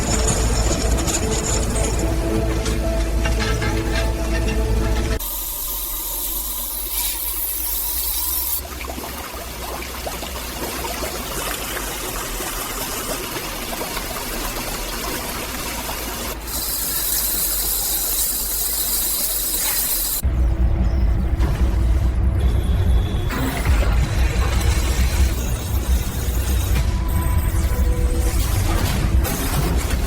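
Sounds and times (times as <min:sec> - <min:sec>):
machine hiss and hum: 0:05.1 - 0:08.6.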